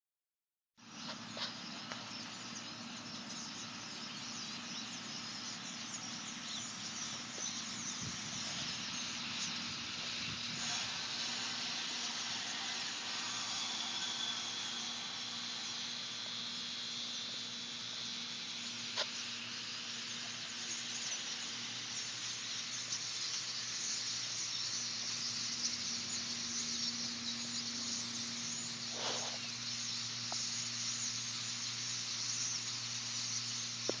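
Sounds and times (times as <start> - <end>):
small birds chattering: 0.8 - 34.0
low hum: 1.7 - 23.0.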